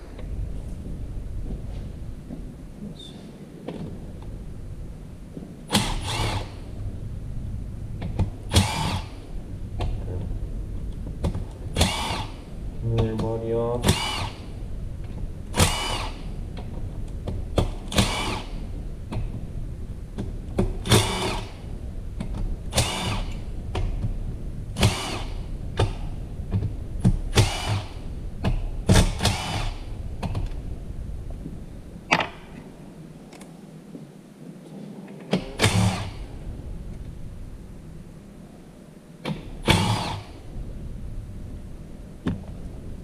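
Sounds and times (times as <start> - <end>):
low hum: 0.0 - 43.0
cordless drill bursts: 5.7 - 6.6, 8.5 - 9.2, 11.8 - 12.4, 13.8 - 14.4, 15.6 - 16.2, 17.9 - 18.5, 20.8 - 21.5, 22.7 - 23.4, 24.8 - 25.4, 27.4 - 28.0, 28.9 - 29.8, 35.6 - 36.2, 39.6 - 40.4.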